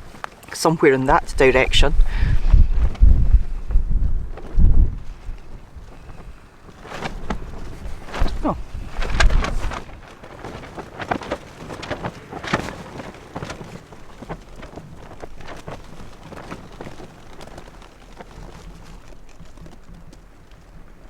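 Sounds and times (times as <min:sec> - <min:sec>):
crackling and rustling: 0:00.0 - 0:21.0
wind rumbling on microphone: 0:00.0 - 0:21.0.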